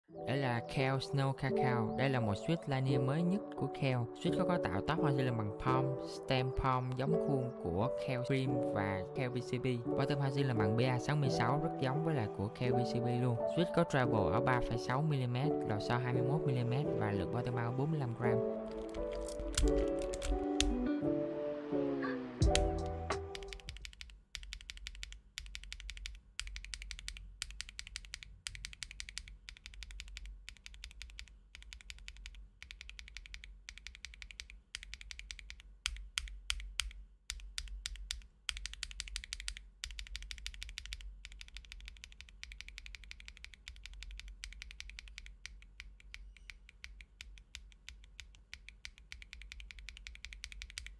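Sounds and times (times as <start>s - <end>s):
typing on mechanical keyboard: 18.7s - 20.8s, 22.5s - 50.9s.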